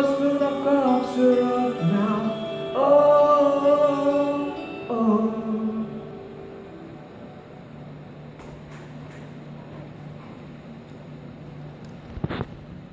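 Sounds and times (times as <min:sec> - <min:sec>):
person singing long notes: 0:00.0 - 0:07.4.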